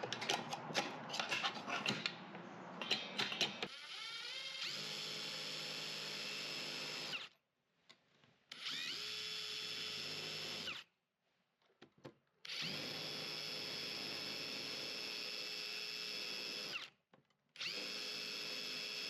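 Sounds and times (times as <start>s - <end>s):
power drill motor whine: 3.7s - 7.3s, 8.5s - 10.8s, 12.5s - 16.9s, 17.6s - 19.0s.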